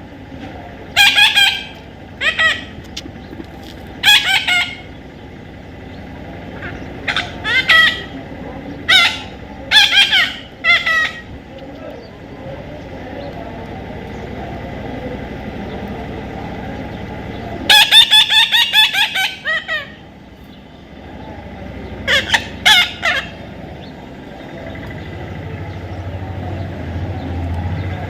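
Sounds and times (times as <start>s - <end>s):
parrot harsh calls: 1.0s - 2.8s, 4.0s - 5.0s, 6.6s - 8.2s, 8.8s - 11.3s, 17.6s - 20.0s, 22.0s - 23.5s.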